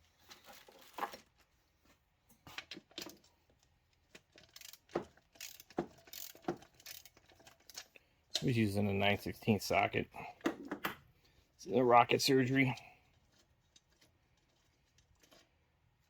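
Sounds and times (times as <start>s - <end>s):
metal parts and tools clinking: 2.4s - 8.6s, 12.4s - 15.6s.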